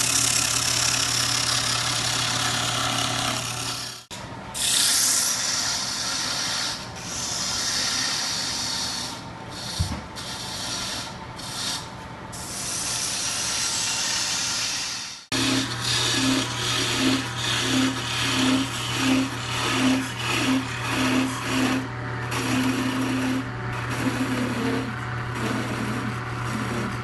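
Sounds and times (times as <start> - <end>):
lathe low hum: 0.0 - 27.0.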